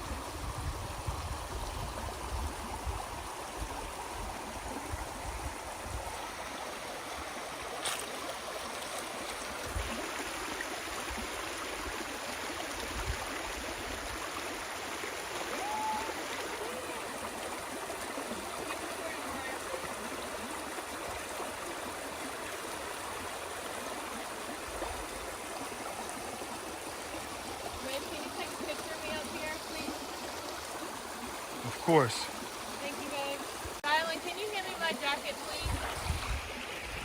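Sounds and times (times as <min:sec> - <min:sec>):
waterfall rushing: 0:31.4 - 0:33.3.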